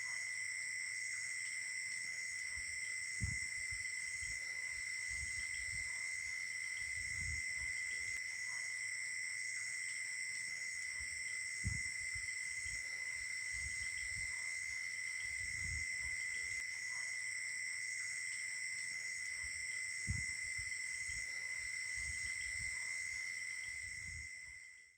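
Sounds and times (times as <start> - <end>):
insects trilling: 0.0 - 24.9
soft low thumps: 3.2 - 3.5, 11.6 - 11.9.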